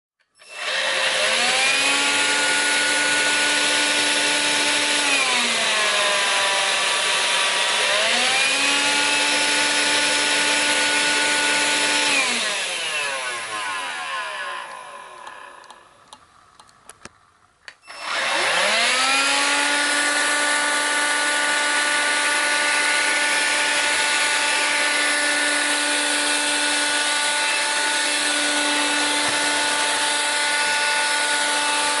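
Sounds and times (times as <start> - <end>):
vacuum cleaner motor whine: 0.4 - 16.2, 17.8 - 32.0
clicks: 14.7 - 18.0.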